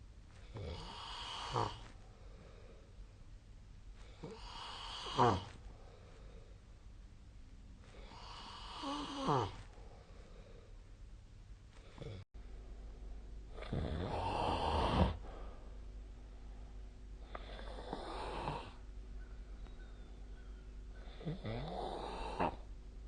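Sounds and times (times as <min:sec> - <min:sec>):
person snoring: 0:00.5 - 0:01.9, 0:04.2 - 0:05.6, 0:08.0 - 0:09.7, 0:13.5 - 0:15.6, 0:17.2 - 0:18.8, 0:21.0 - 0:22.7.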